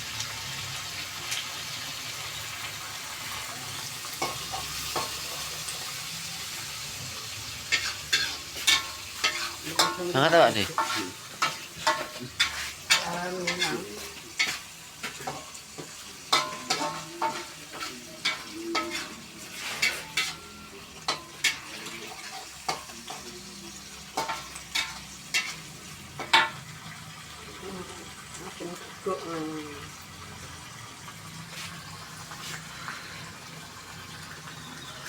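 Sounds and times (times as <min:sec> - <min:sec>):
food sizzling: 0:00.0 - 0:35.0
spatula scraping a pan: 0:04.1 - 0:05.6, 0:06.5 - 0:23.3, 0:23.9 - 0:26.6.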